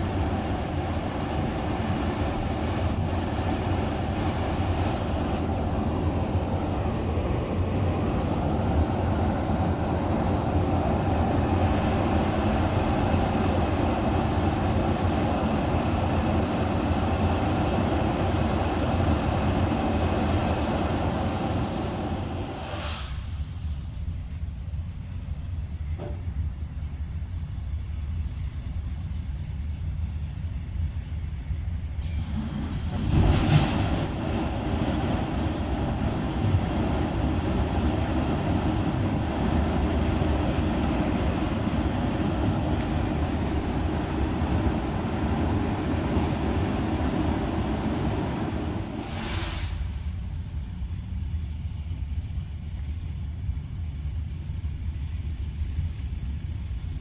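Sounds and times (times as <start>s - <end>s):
rushing hiss: 0.0s - 29.2s, 31.9s - 51.2s
low rumble of pneumatic system: 0.0s - 57.0s
pneumatic system rushing: 20.0s - 23.6s, 32.0s - 50.2s.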